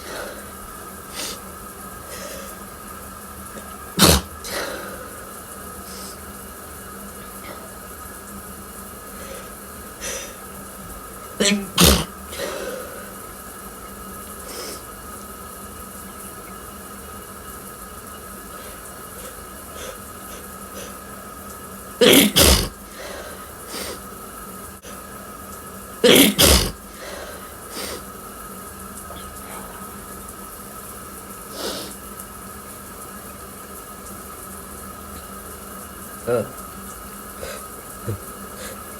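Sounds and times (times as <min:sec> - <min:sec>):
breaths and sniffs: 0:00.0 - 0:02.8, 0:03.6 - 0:06.3, 0:09.1 - 0:10.6, 0:11.4 - 0:13.4, 0:14.4 - 0:15.0, 0:22.0 - 0:24.1, 0:26.1 - 0:28.2, 0:31.4 - 0:32.0, 0:37.3 - 0:38.9
faint steady hum: 0:00.0 - 0:38.9
person sneezing loudly: 0:04.0 - 0:05.0, 0:11.4 - 0:12.9, 0:22.0 - 0:23.2, 0:26.0 - 0:27.2.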